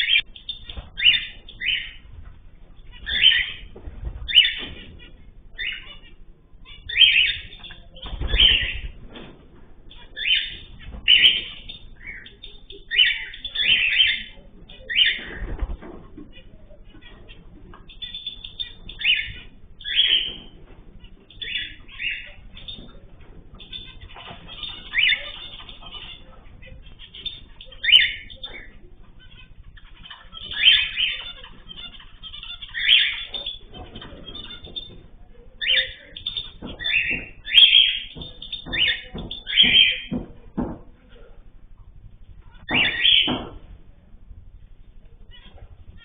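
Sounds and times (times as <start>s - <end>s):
birds chirping: 0.0s - 46.0s.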